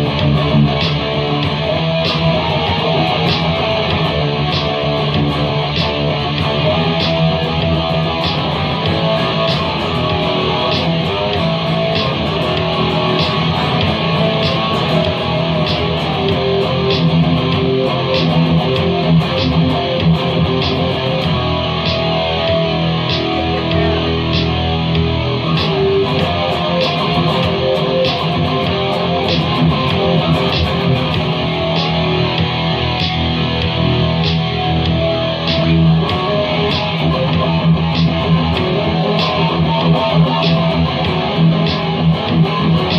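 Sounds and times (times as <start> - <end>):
steady beat: 0.0 - 42.9
strummed and picked guitar: 0.0 - 42.9.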